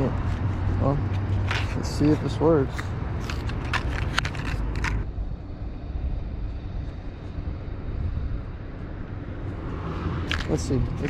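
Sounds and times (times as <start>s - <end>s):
steady low rumble: 0.0s - 11.0s
small parts clicking and rustling: 1.1s - 5.1s, 10.2s - 11.0s.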